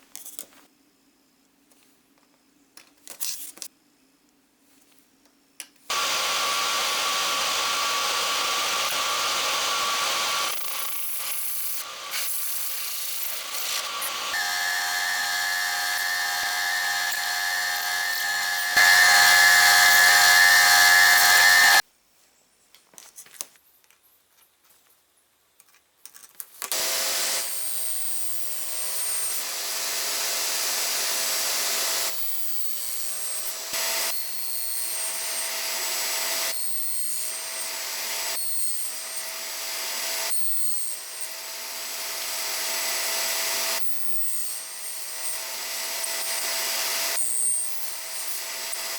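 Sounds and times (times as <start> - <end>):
power tool cutting wood: 5.9 - 21.8, 26.7 - 48.9.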